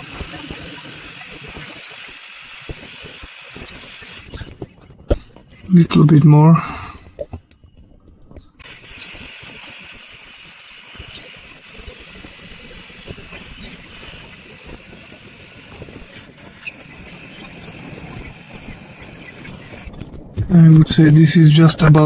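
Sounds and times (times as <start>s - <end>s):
hand pump air hissing: 0.0s - 4.6s, 8.6s - 20.0s.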